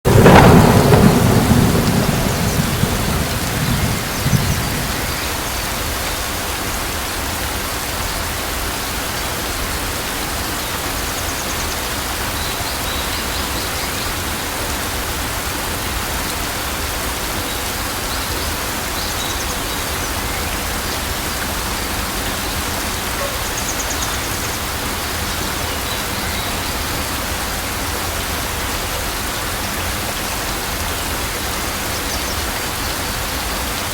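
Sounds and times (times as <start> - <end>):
steady rain falling: 0.0 - 33.9
loud low rumble: 0.1 - 5.2.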